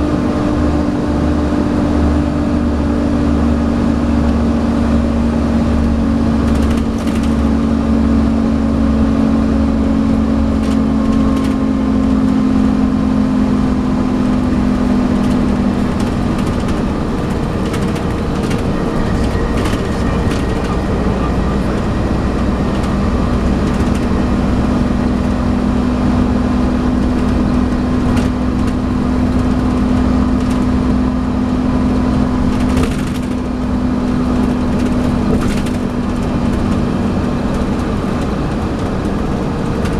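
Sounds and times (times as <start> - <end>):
bus diesel engine under load: 0.0 - 39.9
whining engine note: 0.0 - 39.9
clicks and rattles from bus body: 1.9 - 39.9.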